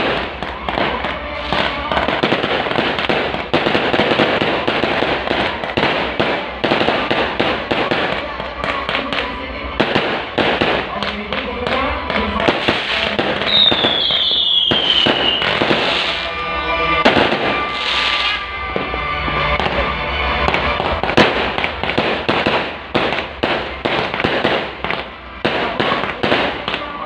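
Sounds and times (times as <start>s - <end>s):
fireworks bursting and crackling: 0.0s - 27.0s
descending firework whistle: 12.6s - 21.8s.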